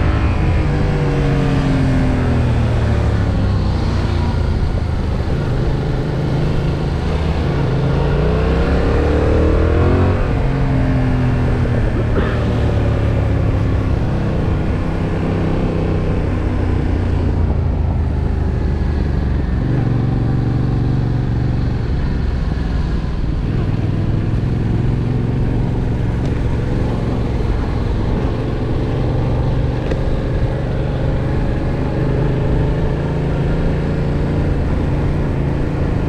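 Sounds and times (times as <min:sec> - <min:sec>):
motorcycle engine running hard: 0:00.0 - 0:36.0.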